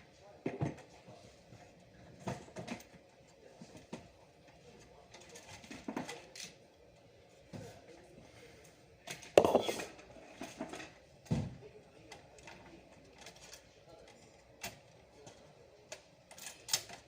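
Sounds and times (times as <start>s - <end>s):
hard parts knocking and clattering: 9.4s - 9.8s.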